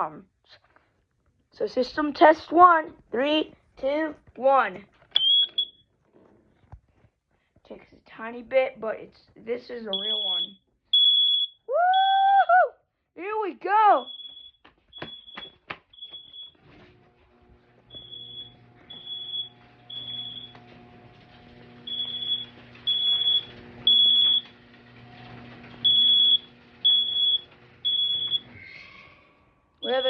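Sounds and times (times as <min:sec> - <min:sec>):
high-pitched fire alarm beeping: 0:05.2 - 0:05.8, 0:09.9 - 0:12.3, 0:14.0 - 0:16.6, 0:17.9 - 0:20.6, 0:21.8 - 0:24.5, 0:25.8 - 0:28.5.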